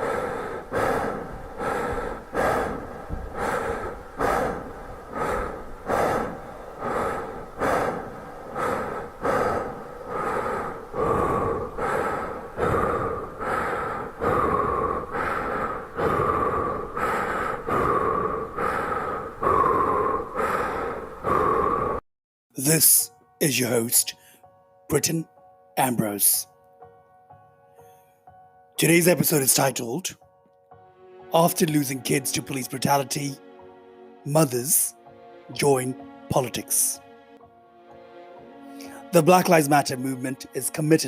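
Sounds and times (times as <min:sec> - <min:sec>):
person gasping breaths: 0:00.0 - 0:22.0, 0:38.6 - 0:39.1.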